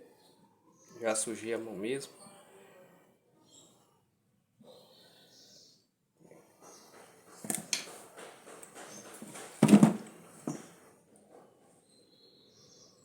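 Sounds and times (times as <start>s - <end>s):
knock of parts: 8.8s - 10.7s.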